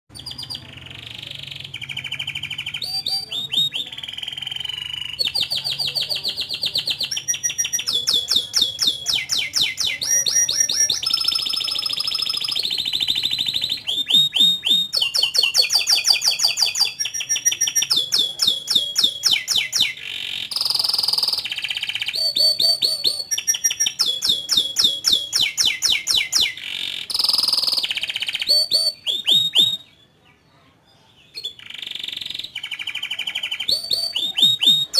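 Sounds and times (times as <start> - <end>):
canary singing trills: 0.1 - 34.9.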